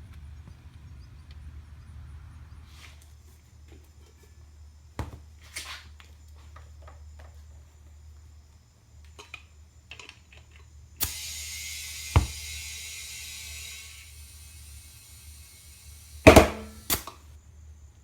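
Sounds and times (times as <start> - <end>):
steady hiss: 8.8 - 17.5
sharp knock: 16.3 - 17.0.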